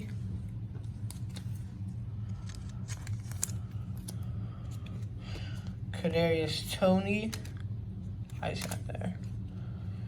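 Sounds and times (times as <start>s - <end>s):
steady low hum: 0.0s - 10.0s
cards clicking and scraping: 1.0s - 5.5s, 8.2s - 9.0s.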